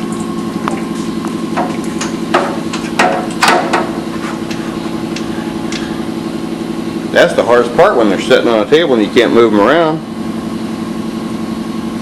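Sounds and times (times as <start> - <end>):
steady hum: 0.0 - 12.0.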